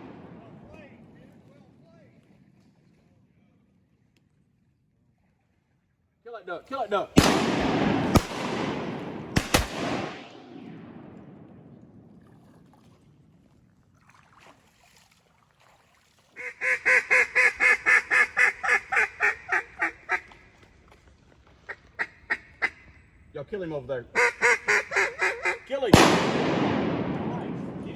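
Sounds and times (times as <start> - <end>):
shotgun shots echoing: 0.0 - 1.4, 7.1 - 12.3, 25.9 - 27.9
duck quacking: 16.4 - 20.4, 24.2 - 25.7.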